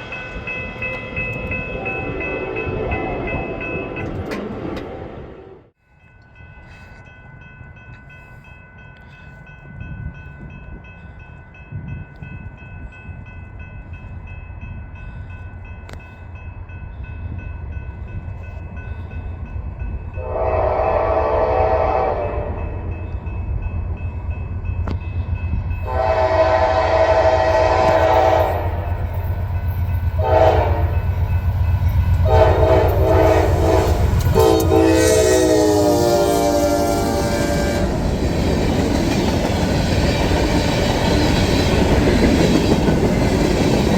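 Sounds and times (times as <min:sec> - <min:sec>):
crossing bell ringing: 0:00.0 - 0:04.5, 0:05.7 - 0:43.9
diesel locomotive engine rumble: 0:00.0 - 0:43.9
locomotive air horn: 0:20.2 - 0:22.9, 0:25.8 - 0:29.0, 0:30.2 - 0:31.0, 0:32.2 - 0:38.0.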